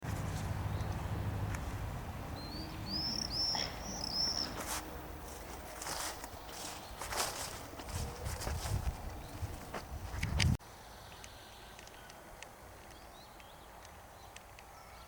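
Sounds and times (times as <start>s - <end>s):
outdoor background noise: 0.0s - 15.0s
small bird chirping: 2.3s - 4.8s.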